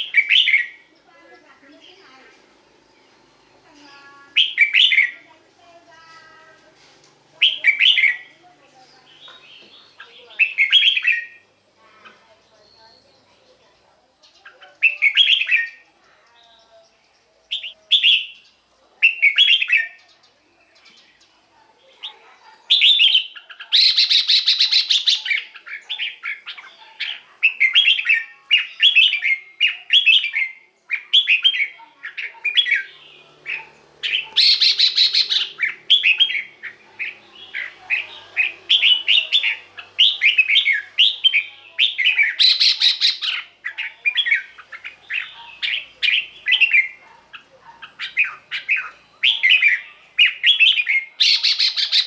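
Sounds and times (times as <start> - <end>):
bird singing whistled phrases: 0.0 - 0.8, 4.3 - 5.2, 7.4 - 8.3, 10.4 - 11.4, 14.8 - 15.8, 22.7 - 26.5, 27.4 - 32.9, 34.0 - 44.5, 48.0 - 52.0.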